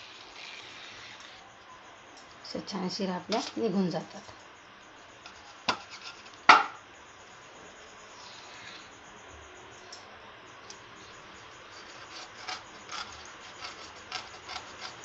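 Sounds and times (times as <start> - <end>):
knife scraping leaf: 0.0 - 1.4, 5.2 - 6.4, 11.7 - 15.0.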